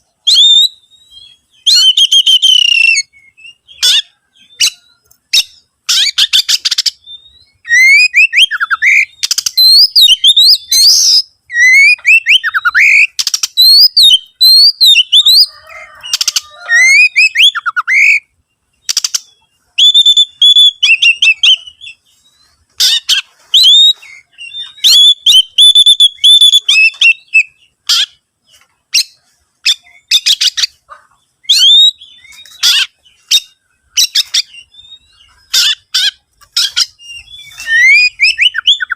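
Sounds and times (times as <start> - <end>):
songbird singing varied phrases: 0.0 - 38.9.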